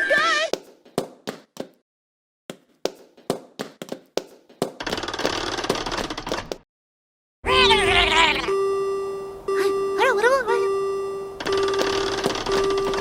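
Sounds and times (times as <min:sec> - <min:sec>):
steady ringing tone: 0:08.5 - 0:13.0.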